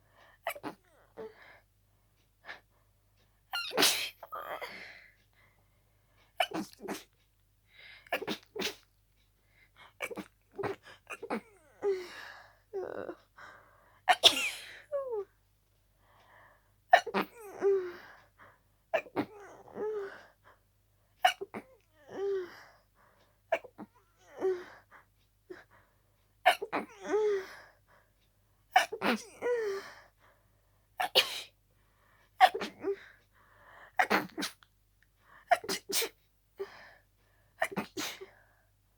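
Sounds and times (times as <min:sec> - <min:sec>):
person sneezing: 0:03.6 - 0:04.2
person sneezing harshly: 0:03.6 - 0:04.3, 0:08.1 - 0:08.8, 0:14.1 - 0:14.8, 0:31.0 - 0:31.5, 0:34.0 - 0:34.6, 0:35.5 - 0:36.2, 0:37.6 - 0:38.3.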